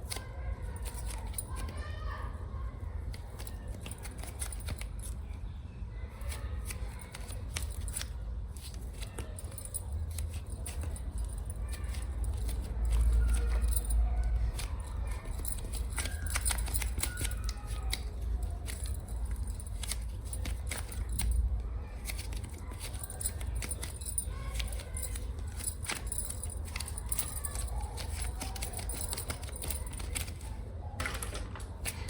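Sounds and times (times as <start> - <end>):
fingernails scratching: 6.2 - 30.6.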